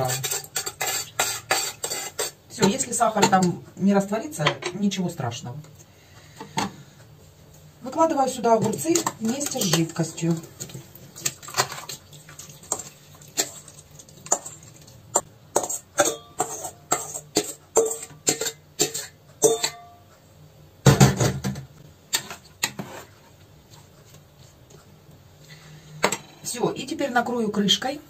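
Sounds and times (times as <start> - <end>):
spoon scraping a metal pot: 0.0 - 3.4, 15.2 - 19.8.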